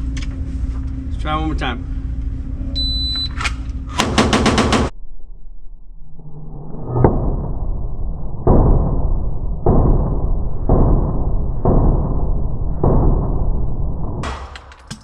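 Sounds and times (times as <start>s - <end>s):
rapid pistol shots: 4.0s - 4.9s.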